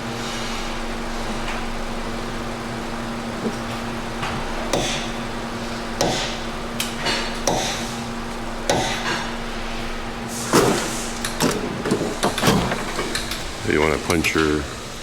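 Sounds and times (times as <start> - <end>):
hammer striking a punch: 6.0 - 6.4, 7.4 - 7.8, 8.7 - 9.1.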